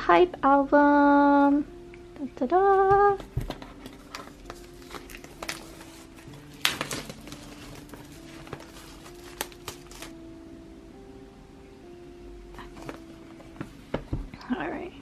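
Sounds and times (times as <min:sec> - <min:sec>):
packaging taps and clicks: 0:03.2 - 0:10.1
packaging rustle: 0:03.2 - 0:10.2, 0:12.6 - 0:14.1.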